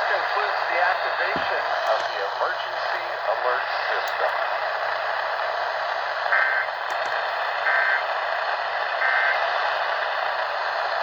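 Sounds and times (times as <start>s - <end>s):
radio static hiss: 0.0s - 4.6s.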